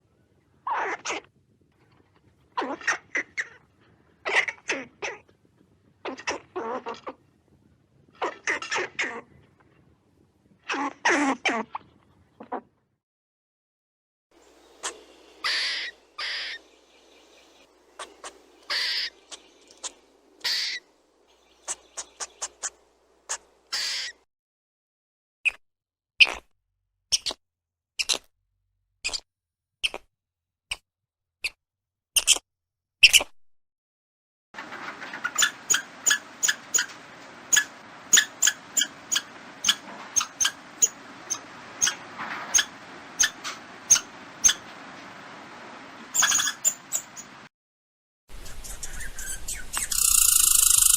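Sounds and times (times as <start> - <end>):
faint background hiss: 14.4 - 24.1
squirrel chirps and calls: 14.4 - 24.2, 35.2 - 44.7, 46.1 - 47.4, 48.4 - 50.9.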